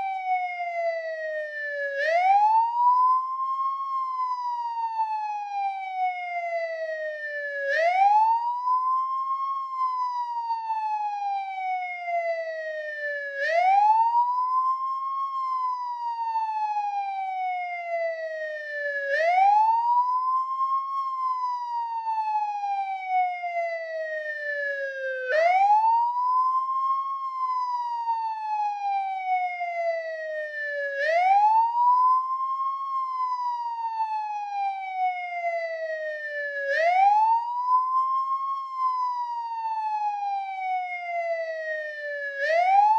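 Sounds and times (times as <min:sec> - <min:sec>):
police siren wailing: 0:00.0 - 0:42.9.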